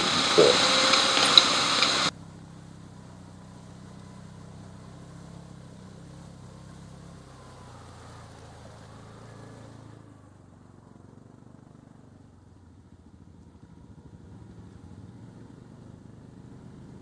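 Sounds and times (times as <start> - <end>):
broad hiss: 0.0 - 2.1
vehicle engine running at low speed: 0.0 - 17.0.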